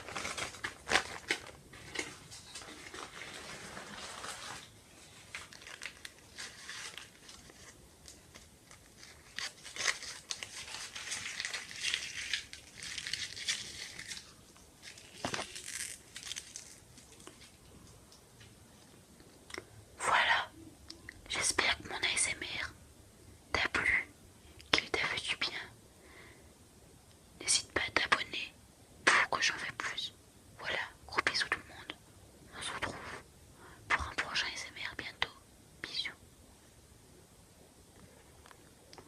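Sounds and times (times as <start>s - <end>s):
plastic crinkling: 0.0s - 17.9s.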